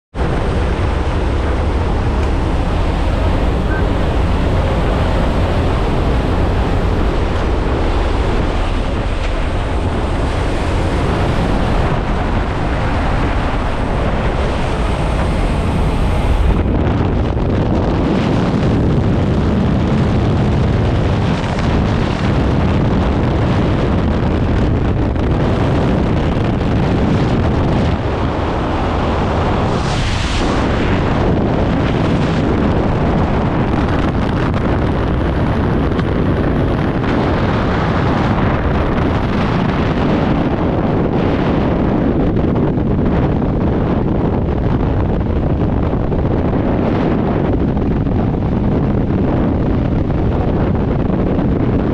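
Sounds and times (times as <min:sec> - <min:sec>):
wind buffeting microphone: 0:00.1 - 0:51.9
diesel tractor engine running: 0:00.2 - 0:17.1.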